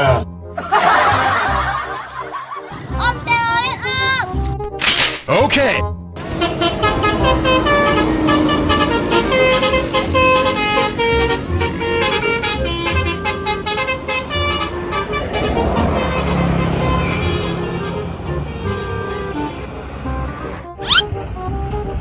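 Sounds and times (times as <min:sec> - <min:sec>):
bus air horn playing a tune: 0:06.2 - 0:22.0
rushing vehicle noise: 0:06.2 - 0:22.0.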